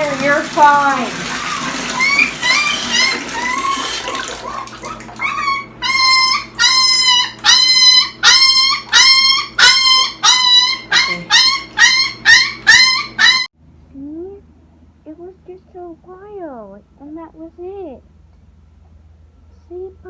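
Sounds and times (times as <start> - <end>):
puppy howling and crying: 1.0 - 13.5.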